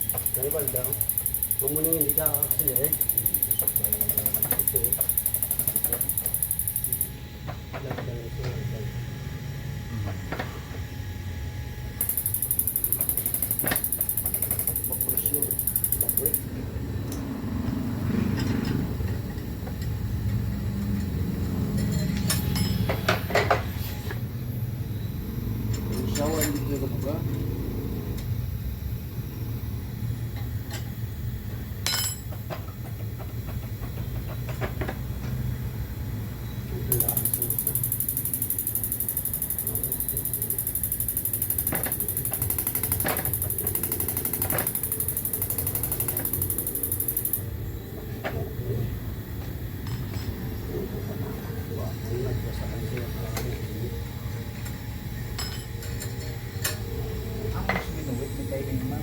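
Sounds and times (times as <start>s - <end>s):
sharp metallic clinks: 0.0s - 7.2s, 12.0s - 16.5s, 36.9s - 47.5s
rapid mechanical pulsing: 0.0s - 7.7s, 11.0s - 16.8s, 36.7s - 49.3s
sharp mechanical knocks: 36.9s - 47.5s.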